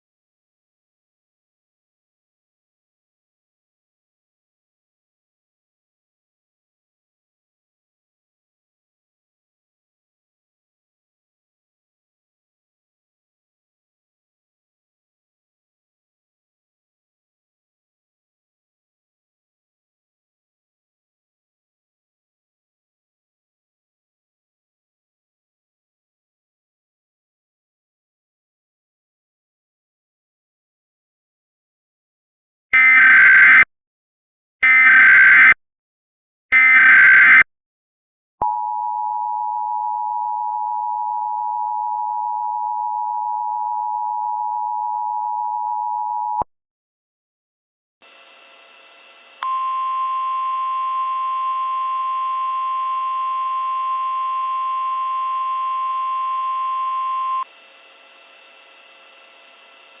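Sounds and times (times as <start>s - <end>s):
faint hum: 48.0s - 60.0s
two-tone attention signal: 49.4s - 57.4s
steady single tone: 49.4s - 57.5s.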